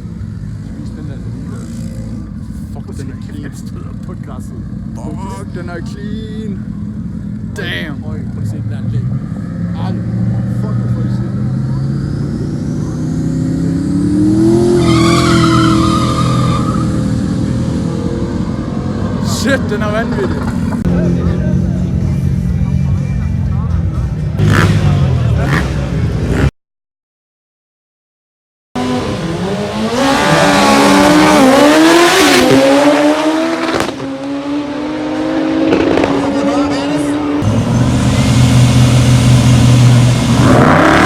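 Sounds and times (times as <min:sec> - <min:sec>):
car engine revving: 0:00.0 - 0:23.6, 0:24.3 - 0:26.5, 0:28.8 - 0:41.0
tires squealing: 0:14.2 - 0:20.9
tyres squealing: 0:14.7 - 0:17.0.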